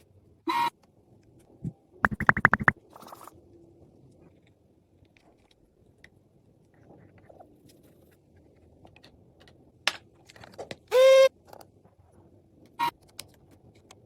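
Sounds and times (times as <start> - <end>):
sharp clicks and taps: 2.0 - 2.8.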